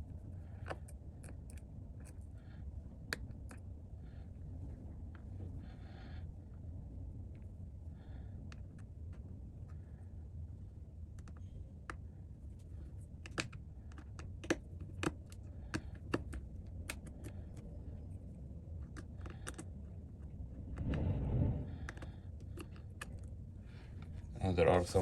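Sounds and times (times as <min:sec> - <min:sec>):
low steady hum: 0:00.0 - 0:25.0
rustling noise: 0:20.6 - 0:22.2.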